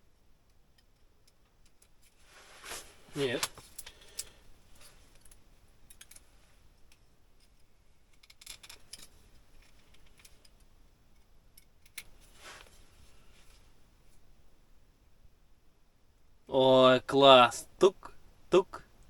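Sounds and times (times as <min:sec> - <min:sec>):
short rustle: 0:02.0 - 0:05.3, 0:12.1 - 0:14.2.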